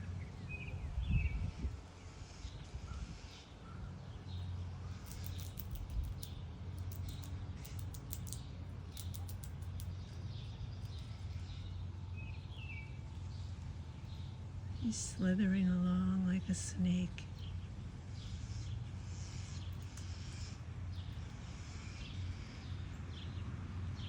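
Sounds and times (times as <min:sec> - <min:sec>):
birds chirping: 0:00.0 - 0:24.0
steady low hum: 0:00.0 - 0:24.0
sharp ticking clicks: 0:05.1 - 0:10.0.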